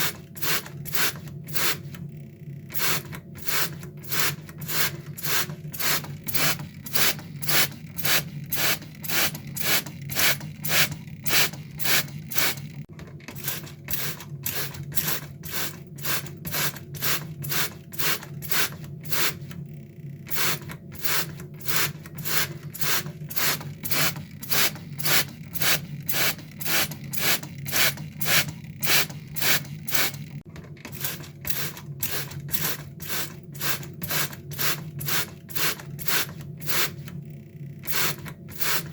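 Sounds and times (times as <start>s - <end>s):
steady low hum: 0.0s - 12.9s.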